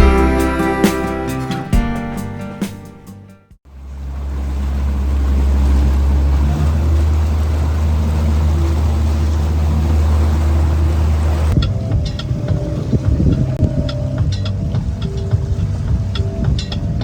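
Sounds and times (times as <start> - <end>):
motorboat engine rumbling: 3.7 - 17.0
water rushing: 3.9 - 11.6.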